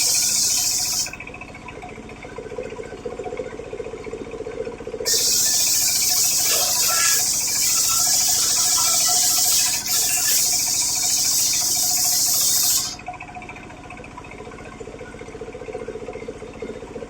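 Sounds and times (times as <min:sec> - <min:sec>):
circular saw cutting wood: 0:00.0 - 0:01.2, 0:05.1 - 0:13.0
motor running: 0:00.0 - 0:01.4, 0:05.1 - 0:13.7.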